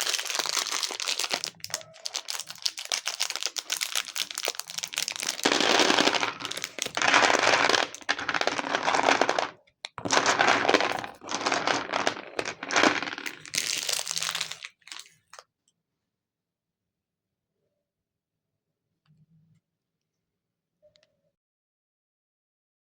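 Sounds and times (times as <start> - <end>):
plastic packaging crinkling: 0.0 - 15.4.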